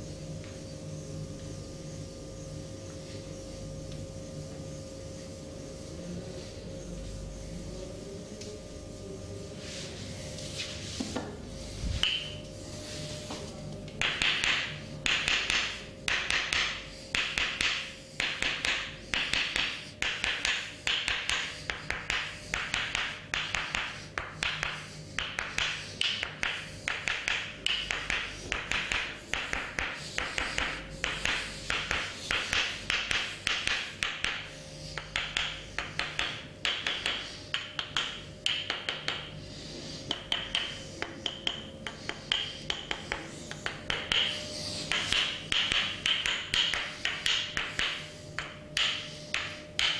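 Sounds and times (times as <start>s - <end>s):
hands slapping body rapidly: 14.0s - 39.3s, 40.1s - 49.9s.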